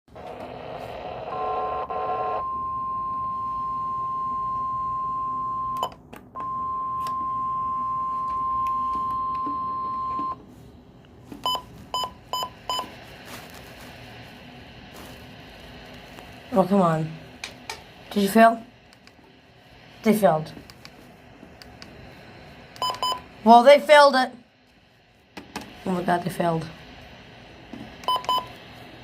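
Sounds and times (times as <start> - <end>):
short electronic beeps: 22.8 - 23.2.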